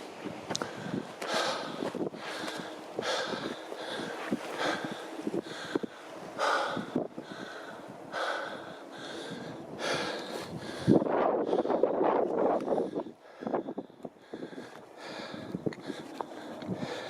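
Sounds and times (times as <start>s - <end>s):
wind buffeting microphone: 0.0s - 17.0s
heavy breathing: 0.5s - 17.0s.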